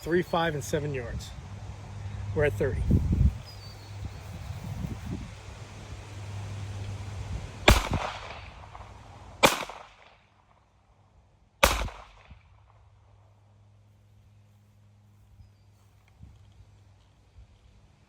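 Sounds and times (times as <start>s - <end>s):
pistol shots with echo: 7.7s - 10.2s, 11.6s - 12.3s.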